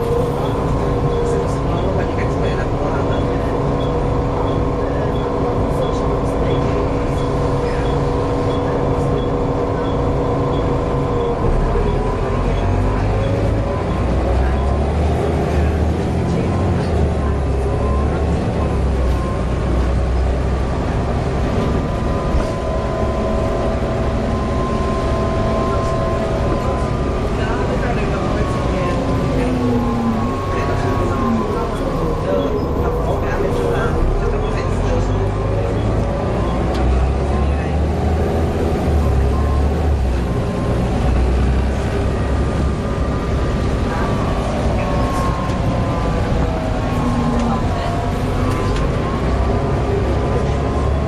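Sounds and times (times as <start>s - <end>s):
bus engine rumble: 0.0s - 51.0s
lower whining tone: 15.5s - 51.0s.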